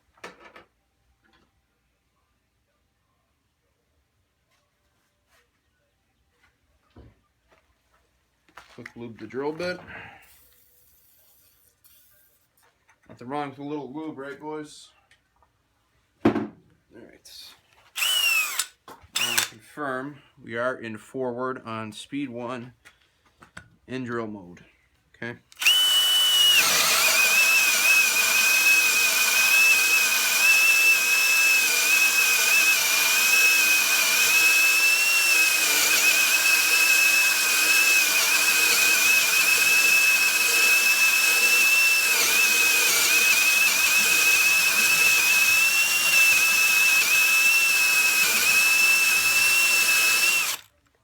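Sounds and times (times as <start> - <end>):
drill motor whining under load: 18.0 - 19.5, 25.6 - 50.7.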